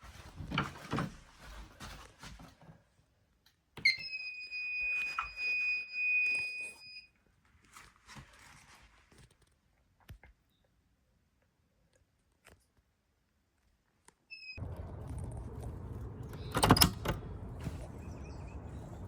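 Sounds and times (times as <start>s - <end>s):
handling clatter and rustling: 0.0s - 3.0s.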